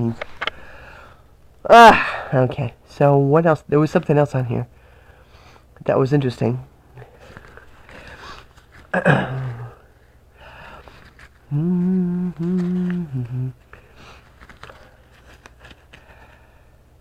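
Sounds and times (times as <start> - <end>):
person humming: 9.0 - 9.9, 11.4 - 13.7.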